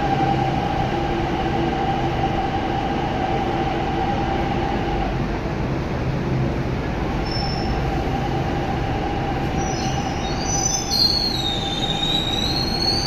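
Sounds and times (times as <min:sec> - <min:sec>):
metro train rumble and hum: 0:00.0 - 0:13.0
high wheel squeal: 0:07.2 - 0:13.0.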